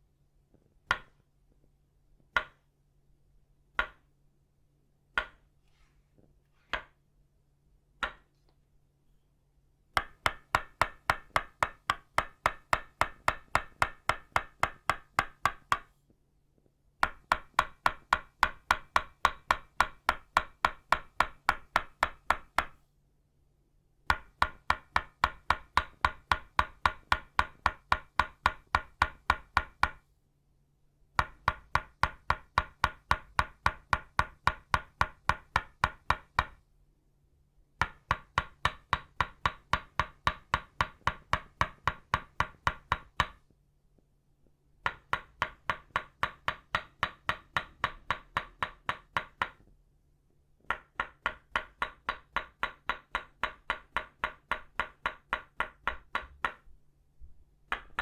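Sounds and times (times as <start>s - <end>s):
wooden mallet knocking on wood: 0.8s - 1.2s, 2.3s - 2.6s, 3.8s - 4.1s, 5.1s - 5.4s, 8.0s - 8.3s, 10.0s - 15.9s, 17.0s - 22.8s, 24.1s - 30.0s, 31.2s - 36.6s, 37.8s - 43.5s, 44.8s - 49.7s, 50.6s - 56.8s, 57.7s - 58.0s.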